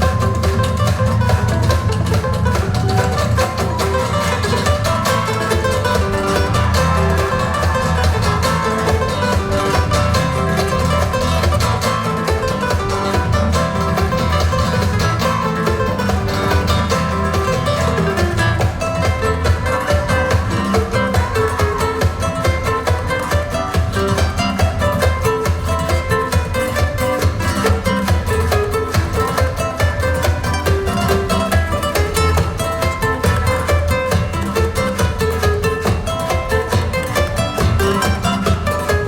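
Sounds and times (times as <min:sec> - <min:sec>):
acoustic guitar music over loudspeakers: 0:00.0 - 0:39.0
steady bass: 0:00.0 - 0:39.0.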